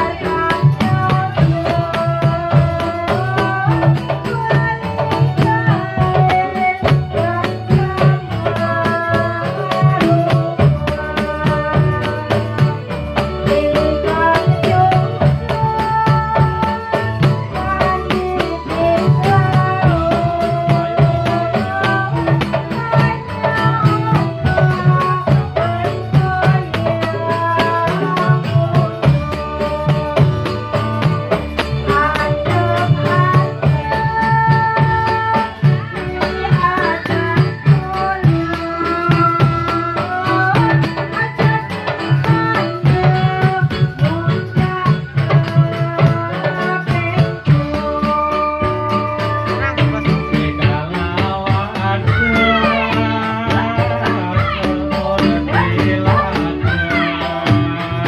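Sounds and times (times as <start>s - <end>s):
drums keeping steady rhythm: 0.0s - 58.0s.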